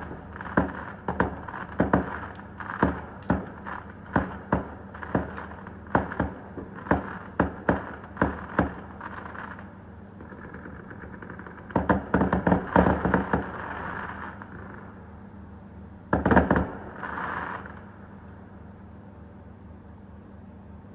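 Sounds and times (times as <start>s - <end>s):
fireworks bangs and crackles: 0.0s - 15.2s, 16.1s - 18.2s.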